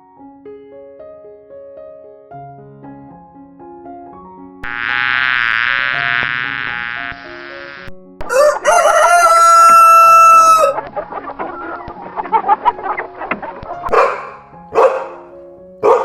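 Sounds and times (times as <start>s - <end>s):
soft piano music: 0.0s - 4.7s, 8.0s - 16.0s
wavering buzzy animal call: 4.6s - 7.9s, 9.1s - 14.5s
rooster crowing: 8.2s - 10.8s.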